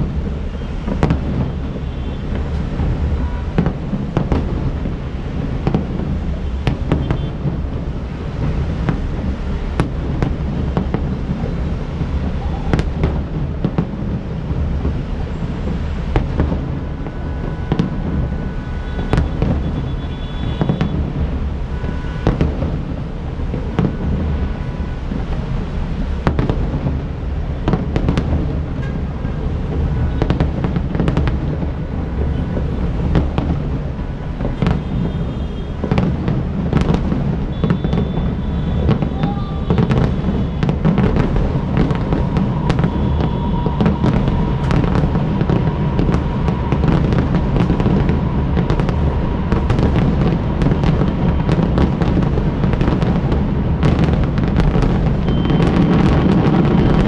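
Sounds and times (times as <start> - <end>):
fireworks popping and banging: 0.0 - 57.0
low rumble: 40.1 - 55.4.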